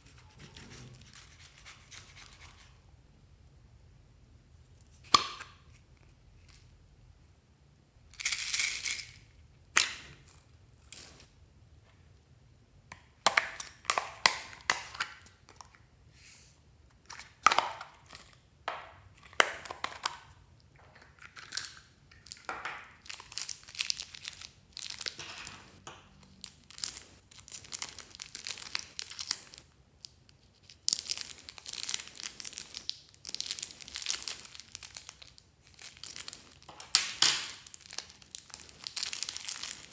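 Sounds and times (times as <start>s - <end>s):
slime crackling and popping: 21.4s - 29.7s, 30.7s - 39.9s.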